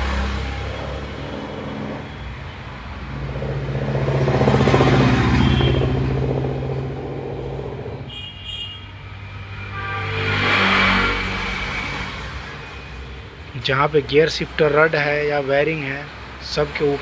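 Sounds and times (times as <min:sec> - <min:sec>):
vehicle engine running: 0:00.0 - 0:08.2.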